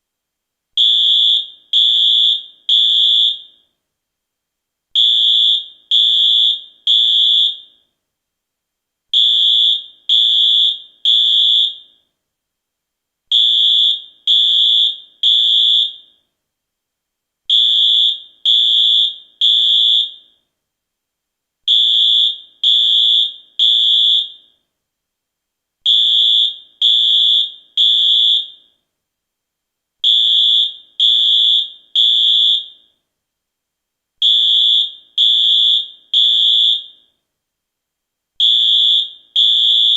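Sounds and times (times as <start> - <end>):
fire alarm high-pitched beeps: 0.8 - 3.7, 5.0 - 7.8, 9.2 - 12.1, 13.3 - 16.2, 17.5 - 20.4, 21.7 - 24.6, 25.9 - 28.8, 30.0 - 33.0, 34.2 - 37.2, 38.4 - 39.9.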